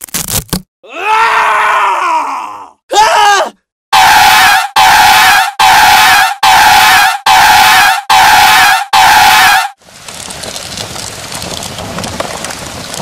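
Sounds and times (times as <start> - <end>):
scream-like vocal groan: 0.8 - 3.6.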